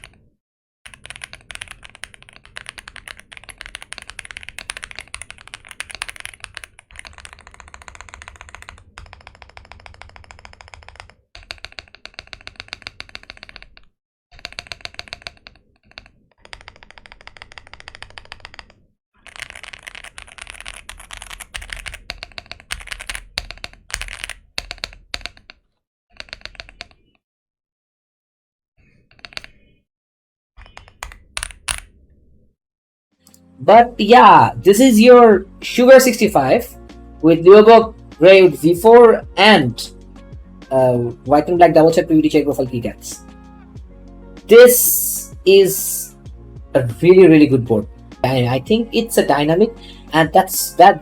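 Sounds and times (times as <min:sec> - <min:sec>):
fast typing on mechanical keyboard: 0:00.0 - 0:00.2, 0:00.9 - 0:25.6, 0:26.2 - 0:27.0, 0:29.2 - 0:29.5, 0:30.6 - 0:31.9.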